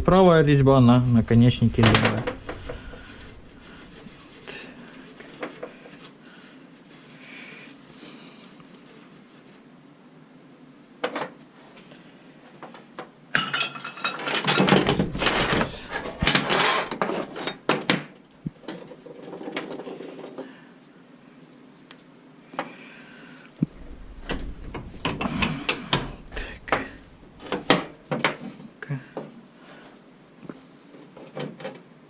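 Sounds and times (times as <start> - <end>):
metal tools clinking on workbench: 13.4 - 17.9.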